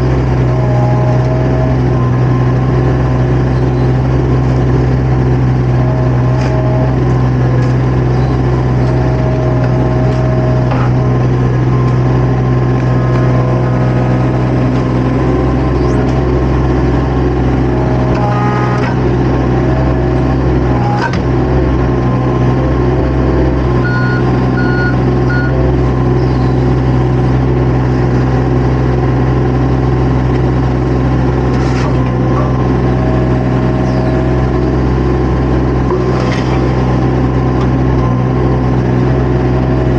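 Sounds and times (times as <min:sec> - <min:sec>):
diesel engine running: 0:00.0 - 0:39.9
short beeps: 0:23.8 - 0:25.6.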